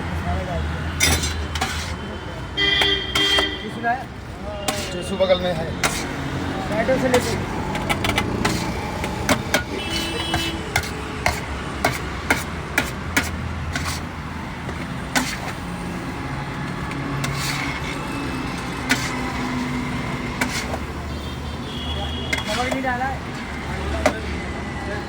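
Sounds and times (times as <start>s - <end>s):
metal spatula clanking on griddle: 1.0s - 1.9s, 7.1s - 14.0s, 18.8s - 19.6s, 20.4s - 20.8s.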